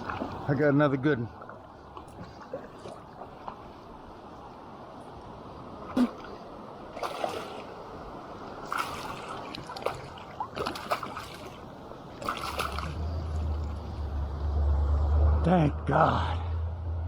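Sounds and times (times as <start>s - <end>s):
river current rushing: 0.0s - 16.4s
fish splashing in water: 6.0s - 13.8s.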